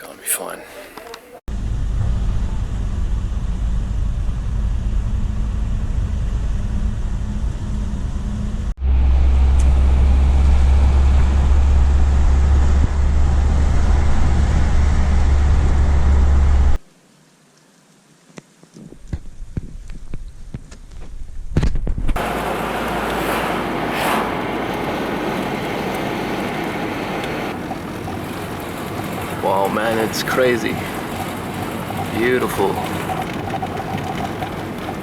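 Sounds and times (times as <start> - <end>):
car cabin road rumble: 22.0 - 35.0.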